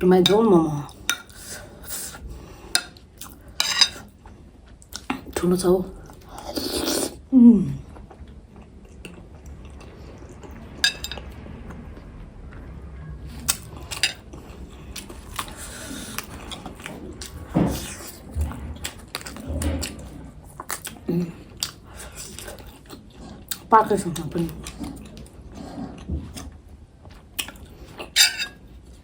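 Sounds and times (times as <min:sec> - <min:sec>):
spoon clinking against bowl: 0:10.8 - 0:11.2, 0:28.2 - 0:28.6
chewing: 0:13.4 - 0:23.7, 0:24.4 - 0:28.2.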